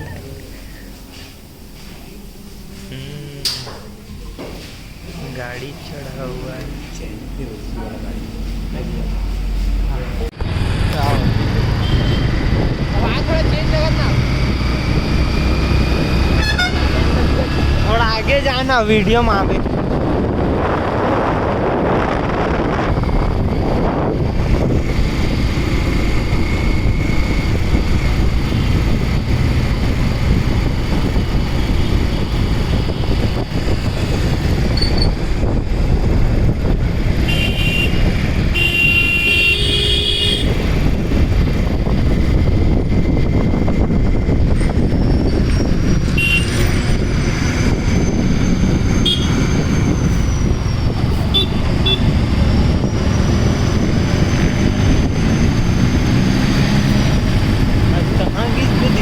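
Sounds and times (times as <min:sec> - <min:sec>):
wind and road rumble: 0:00.0 - 0:59.0
vehicle horns honking: 0:11.8 - 0:12.4, 0:16.2 - 0:17.2, 0:37.2 - 0:40.9, 0:46.1 - 0:46.8, 0:49.0 - 0:49.7, 0:51.1 - 0:52.3.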